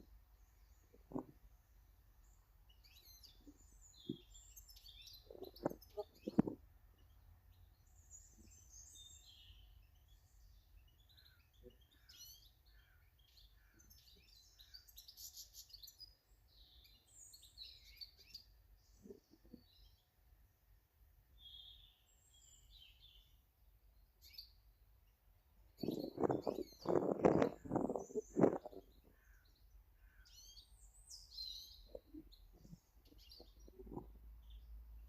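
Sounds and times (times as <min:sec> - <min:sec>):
birds chirping: 0:02.2 - 0:20.1, 0:25.7 - 0:35.0.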